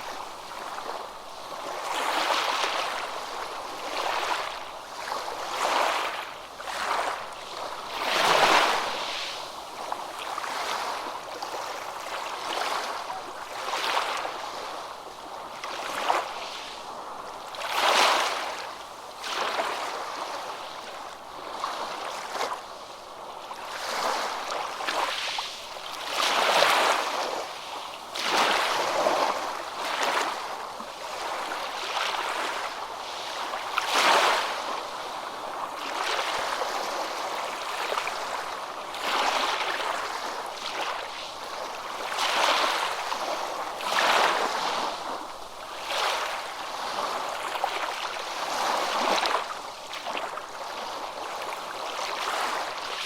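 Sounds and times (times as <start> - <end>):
water lapping and splashing: 23.5 - 53.0.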